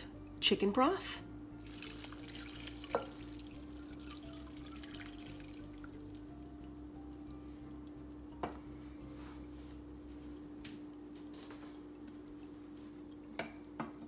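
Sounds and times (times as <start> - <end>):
broth pouring: 1.5 - 10.4.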